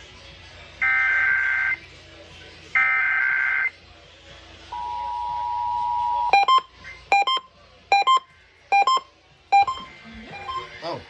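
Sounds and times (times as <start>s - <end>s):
two-tone alert signal: 4.8s - 10.8s.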